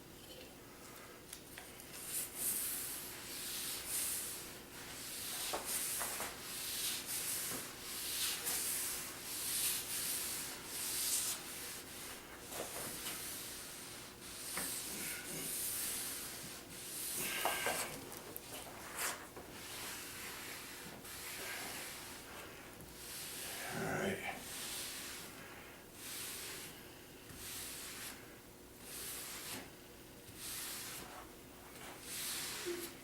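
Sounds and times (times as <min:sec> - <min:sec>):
hand scrubbing wooden tabletop: 0:02.0 - 0:23.7, 0:24.4 - 0:33.0.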